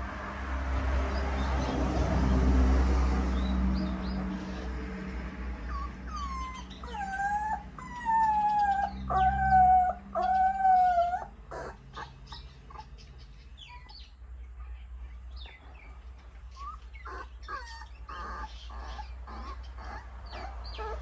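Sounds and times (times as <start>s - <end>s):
puppies squeaking and whimpering: 5.6s - 14.7s, 15.5s - 21.0s.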